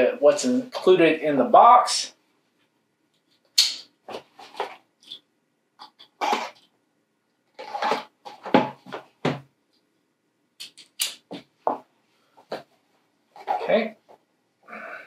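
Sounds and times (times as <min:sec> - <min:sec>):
box scraping and rustling: 0:07.6 - 0:08.6.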